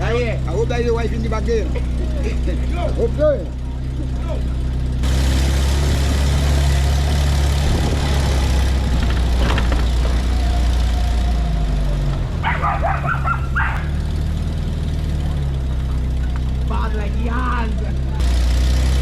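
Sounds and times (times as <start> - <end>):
vehicle engine idling: 0.0 - 19.0
dog barking: 12.1 - 14.0.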